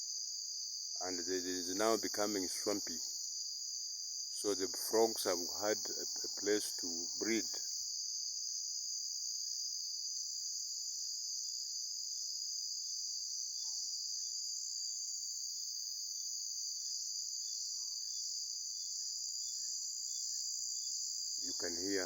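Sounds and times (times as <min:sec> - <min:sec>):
crickets chirping: 0:00.0 - 0:22.0
frogs calling: 0:01.0 - 0:03.2, 0:04.4 - 0:07.7, 0:21.4 - 0:22.0.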